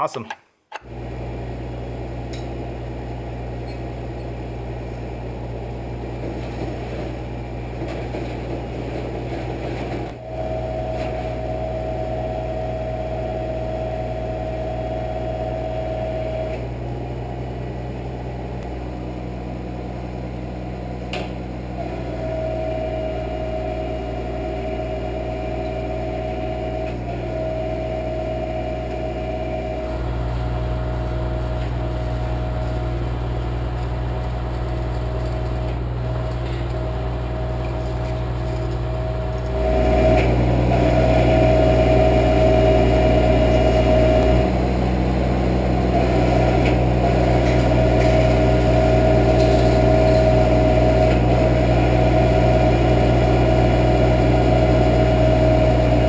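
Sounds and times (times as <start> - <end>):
crane engine running: 0.0 - 56.0
winch whine: 9.9 - 16.8, 21.8 - 56.0.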